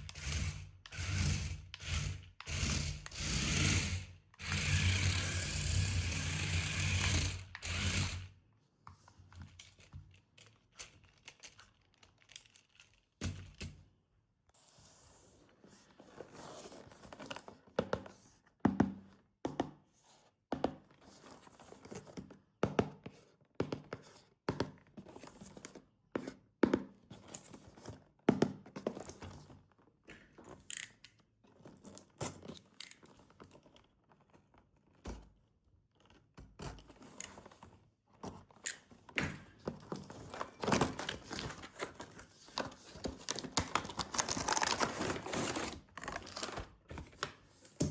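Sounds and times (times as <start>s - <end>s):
plastic and cardboard crinkling: 36.9s - 47.9s
rasping rubbing of packaging: 40.0s - 46.8s.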